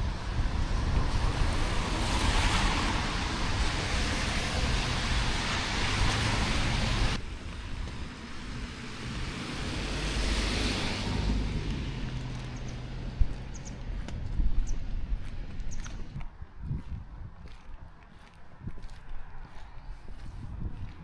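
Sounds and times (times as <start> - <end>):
tyres hissing on wet road: 0.0 - 12.1.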